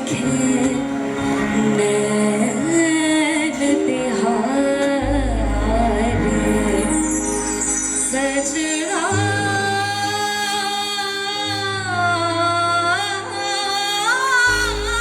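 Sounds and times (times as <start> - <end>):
woman singing long wordless note: 0.0 - 15.0
backing track with low bass: 3.5 - 9.9.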